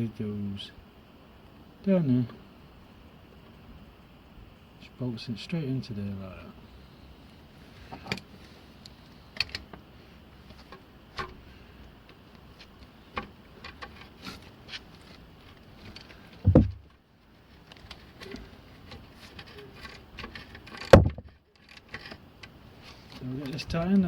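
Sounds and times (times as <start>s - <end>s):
dull low thump: 16.4s - 16.9s, 20.9s - 21.3s.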